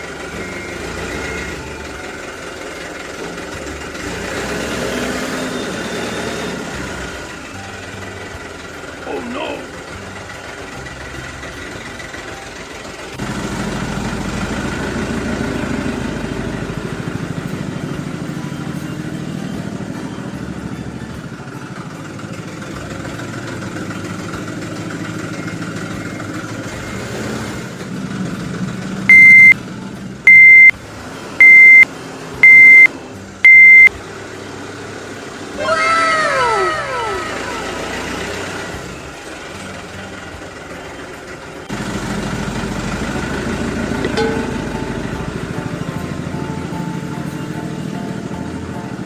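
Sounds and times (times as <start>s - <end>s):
loud beeps: 29.1s - 29.6s, 30.3s - 30.7s, 31.4s - 31.8s, 32.4s - 32.9s, 33.5s - 33.9s.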